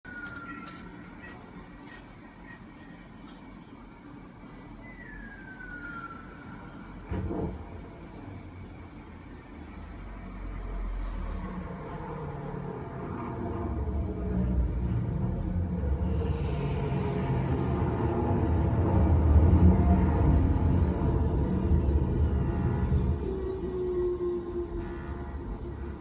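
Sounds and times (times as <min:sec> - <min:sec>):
whistle-like tone gliding down: 0:04.8 - 0:06.8
deep rumble: 0:10.3 - 0:26.0.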